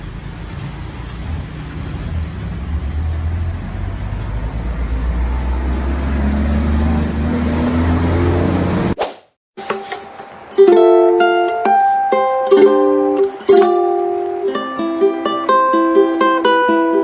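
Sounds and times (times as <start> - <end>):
vehicle engine rumbling: 0.0 - 9.0.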